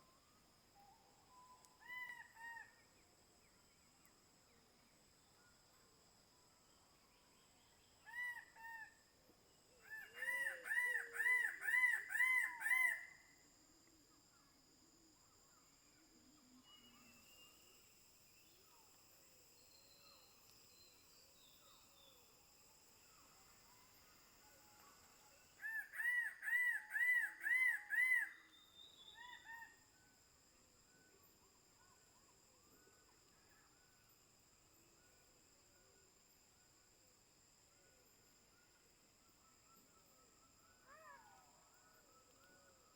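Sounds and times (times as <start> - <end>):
high insect drone: 15.1 - 25.6.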